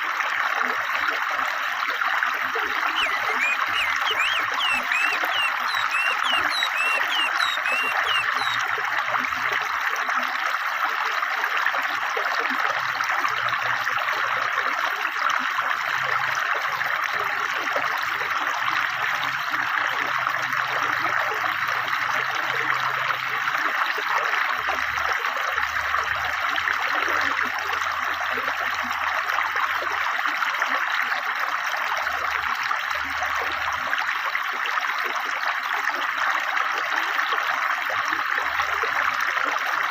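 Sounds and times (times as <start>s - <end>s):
river water rushing over stones: 2.8s - 8.6s
forest birds chirping: 2.9s - 8.6s.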